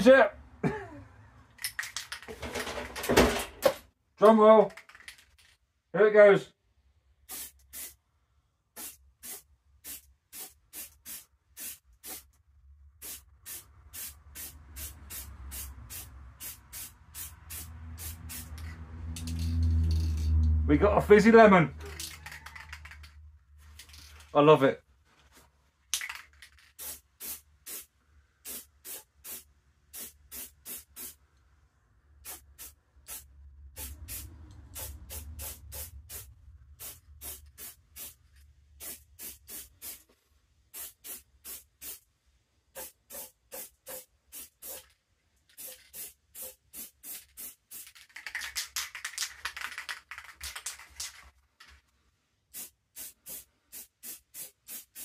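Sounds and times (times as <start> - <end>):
spray-paint can spraying: 7.2 - 8.0, 8.7 - 12.4, 13.0 - 20.4, 21.8 - 23.1, 26.0 - 31.2, 32.2 - 38.2, 38.8 - 40.1, 40.7 - 42.1, 42.7 - 51.2, 52.5 - 55.0.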